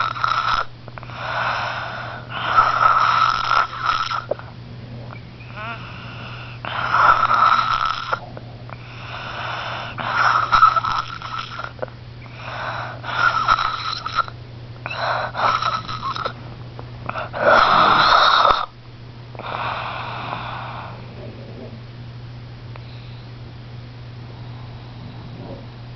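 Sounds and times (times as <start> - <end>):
hissing snoring breaths: 0.0 - 4.5, 5.1 - 16.4, 17.0 - 18.7, 19.4 - 21.2.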